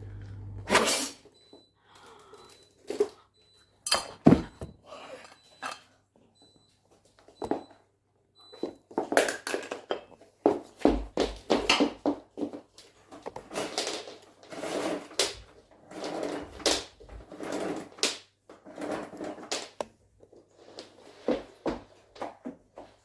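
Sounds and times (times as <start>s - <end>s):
household knocks scrapes and rustles: 8.9s - 23.0s.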